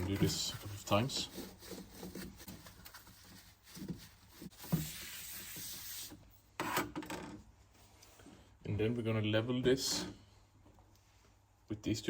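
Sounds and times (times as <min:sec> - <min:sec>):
hand scrubbing and wiping: 0:00.0 - 0:06.2.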